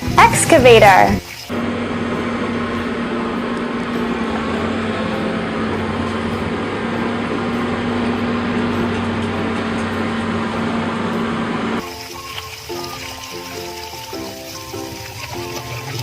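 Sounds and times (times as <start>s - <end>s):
excavator engine running: 0.0s - 16.0s.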